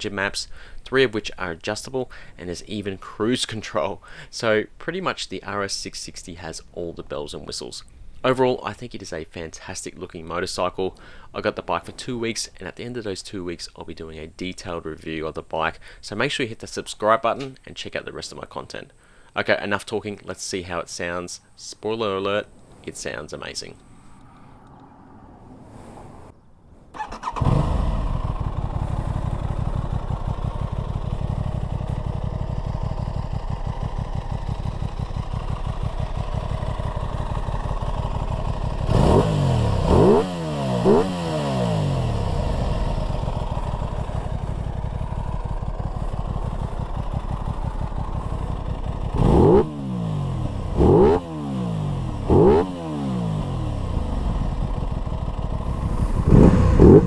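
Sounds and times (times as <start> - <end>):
motorcycle engine idling and revving: 27.0 - 57.0.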